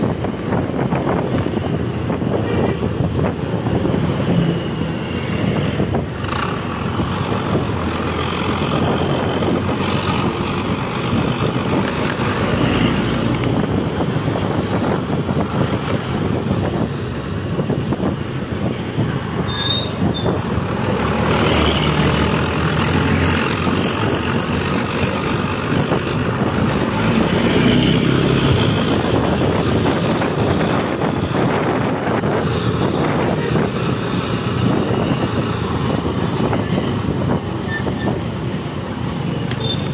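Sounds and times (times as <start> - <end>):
bus diesel engine running: 0.0 - 39.9
tyre and road noise: 0.0 - 39.9.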